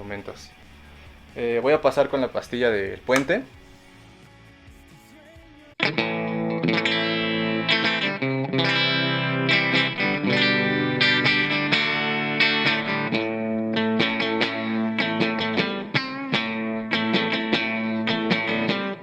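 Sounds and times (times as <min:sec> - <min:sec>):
electric guitar chords strummed: 0:05.8 - 0:19.0.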